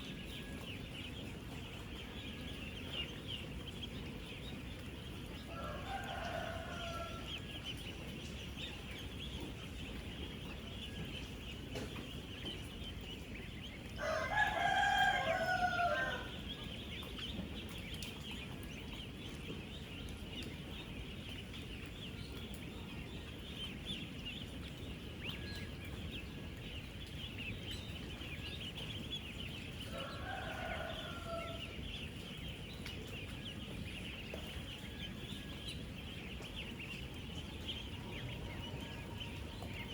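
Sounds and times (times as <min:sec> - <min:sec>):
ducklings peeping: 0:00.0 - 0:39.9.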